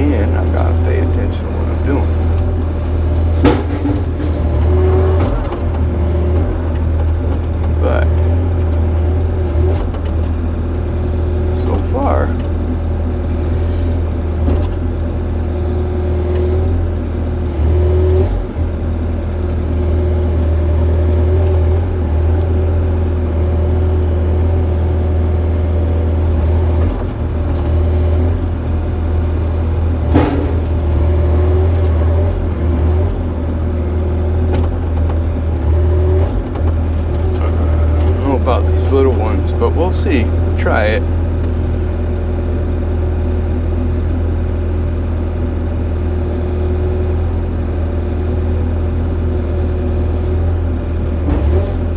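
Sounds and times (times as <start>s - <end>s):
diesel engine running under load: 0.0s - 51.9s.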